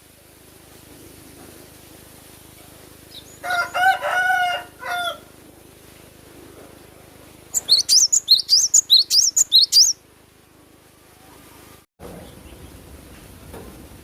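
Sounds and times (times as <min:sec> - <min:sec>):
bird chirping rapidly: 0:03.1 - 0:03.8, 0:07.5 - 0:10.1.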